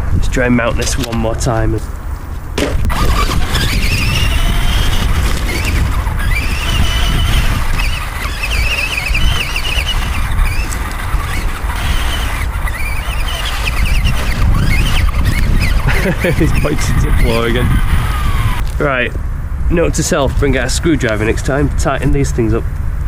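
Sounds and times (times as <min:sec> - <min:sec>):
wind rumble on microphone: 0:00.0 - 0:23.0
electric motor whining: 0:02.0 - 0:18.9.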